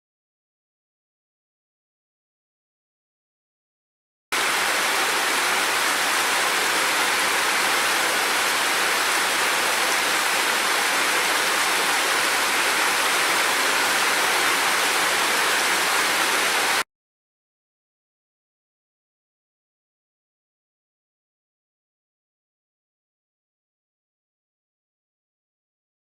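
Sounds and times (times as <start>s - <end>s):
water rushing: 4.4s - 16.8s.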